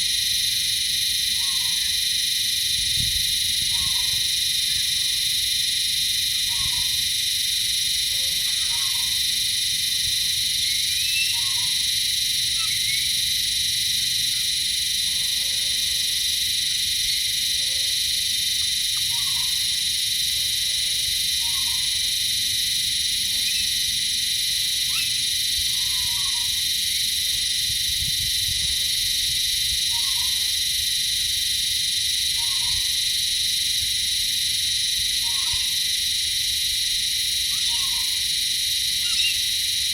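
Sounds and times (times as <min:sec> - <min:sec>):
high-pitched insect chorus: 0:00.0 - 0:39.9
frog calls: 0:01.3 - 0:02.1, 0:03.6 - 0:05.4, 0:06.3 - 0:07.2, 0:08.1 - 0:13.2, 0:17.5 - 0:22.3, 0:24.5 - 0:27.5, 0:29.8 - 0:30.6, 0:32.3 - 0:33.2, 0:35.0 - 0:36.0, 0:37.3 - 0:39.9.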